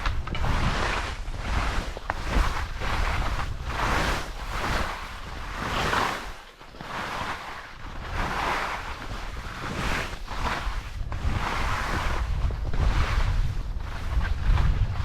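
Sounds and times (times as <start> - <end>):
skis scraping across snow: 0.0 - 15.0
wind rumbling on microphone: 0.0 - 15.0.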